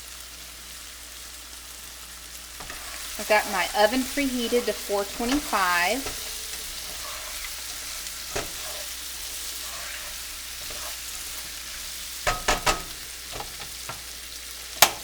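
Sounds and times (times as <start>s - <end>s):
chicken sizzling in a pan: 0.0s - 15.0s
utensil knocking against pan: 5.2s - 8.9s, 9.8s - 14.1s.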